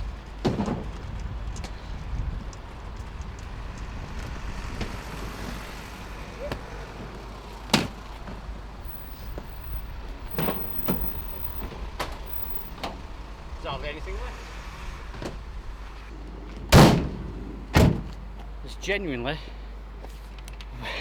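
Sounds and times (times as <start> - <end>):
vehicle rumble: 3.1 - 16.2.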